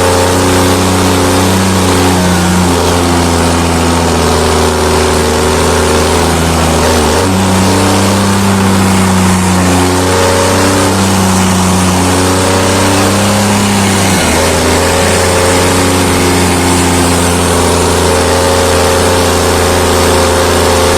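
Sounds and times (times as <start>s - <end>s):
tractor diesel engine running: 0.0s - 20.9s.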